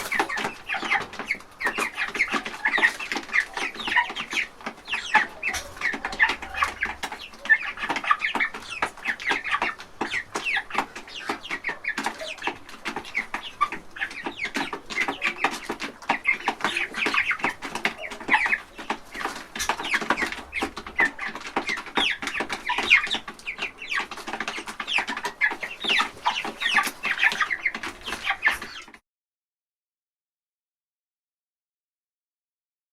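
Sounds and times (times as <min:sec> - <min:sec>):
beaks pecking a trough: 0:00.0 - 0:29.0
chicks peeping and clucking: 0:00.0 - 0:29.0.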